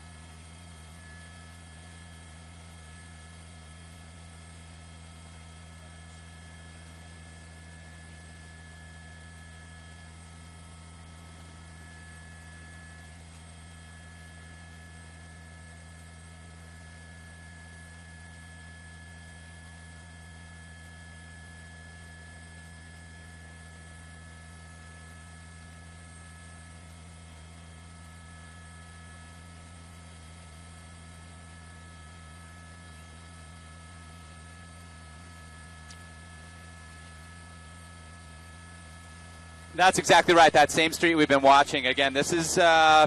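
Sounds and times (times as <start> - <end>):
steady hum: 34.2 - 43.0.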